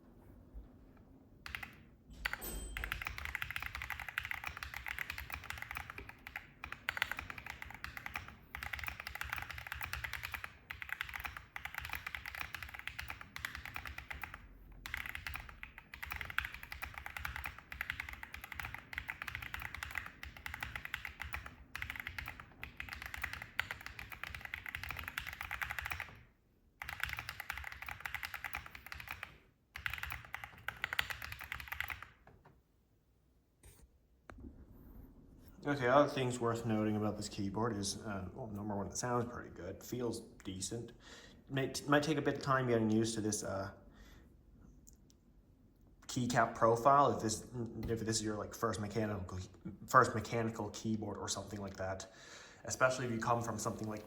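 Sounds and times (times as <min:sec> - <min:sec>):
mechanical keyboard typing: 0:01.4 - 0:32.2.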